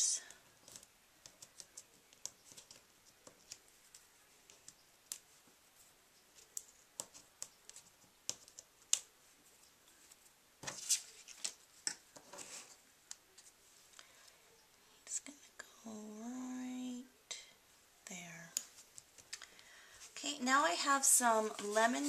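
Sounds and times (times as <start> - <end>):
peeling foam adhesive squares: 0.3 - 13.6
hands handling cardstock: 9.9 - 13.6.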